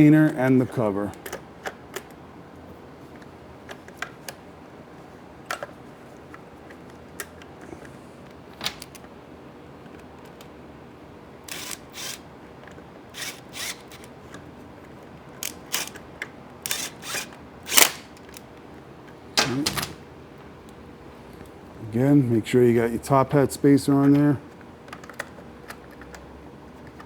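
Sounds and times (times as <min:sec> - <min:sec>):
sharp metallic clicks: 0:17.7 - 0:18.4
tools and parts clattering: 0:19.4 - 0:20.5.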